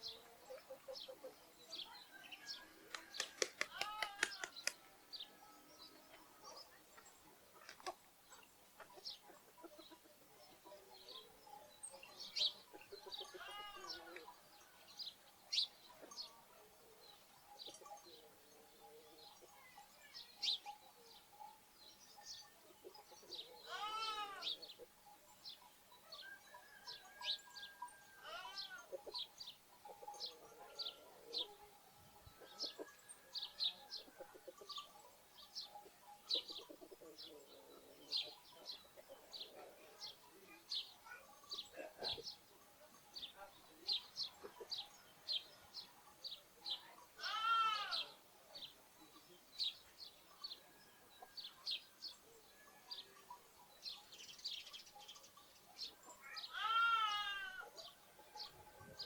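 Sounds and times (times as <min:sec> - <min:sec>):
sparrows chirping: 0:00.0 - 0:59.0
lamb bleating: 0:23.7 - 0:24.5, 0:47.2 - 0:48.1, 0:56.5 - 0:57.6.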